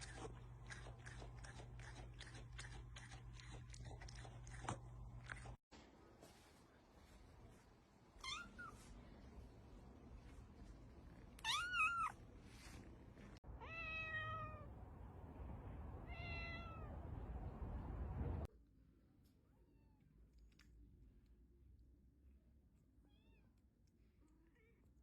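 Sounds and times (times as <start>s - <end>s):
cats meowing: 11.4s - 12.2s, 13.6s - 14.7s, 16.1s - 17.0s.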